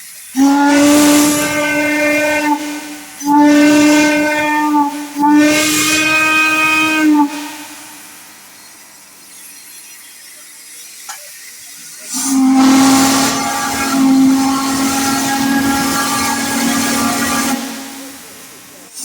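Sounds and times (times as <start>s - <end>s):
hiss of escaping steam: 0.0s - 19.0s
deep steam whistle blast: 0.3s - 8.2s, 12.1s - 19.0s.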